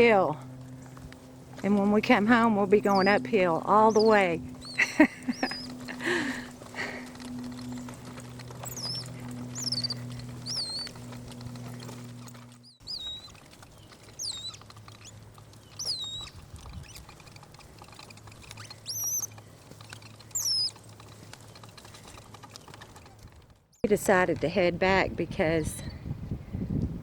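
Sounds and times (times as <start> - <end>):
low steady hum: 0.0 - 27.0
monkey squeaky peeps: 2.6 - 6.0, 7.3 - 20.8.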